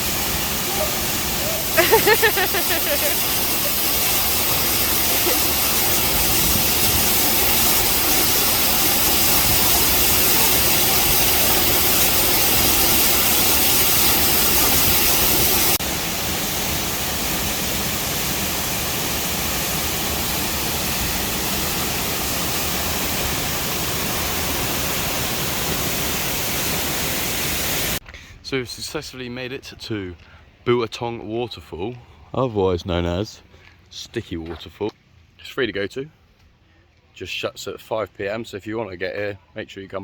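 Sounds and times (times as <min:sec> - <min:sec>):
waterfall rushing: 0:00.0 - 0:28.0.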